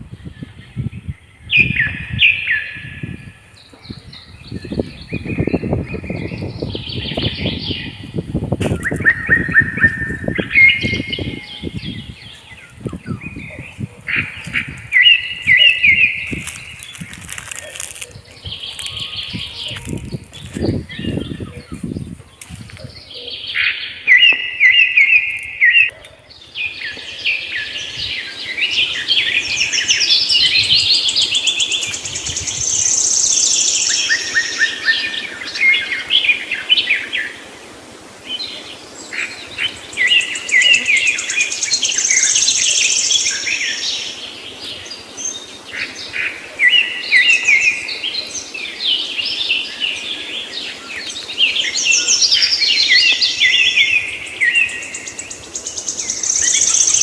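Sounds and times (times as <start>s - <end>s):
small birds chirping and singing: 0.0s - 57.0s.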